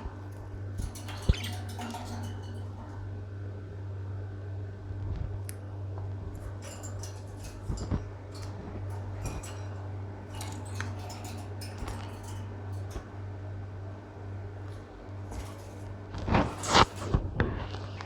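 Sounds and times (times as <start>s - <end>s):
lovebirds clicking and ticking: 0.0s - 3.0s
steady low hum: 0.0s - 18.0s.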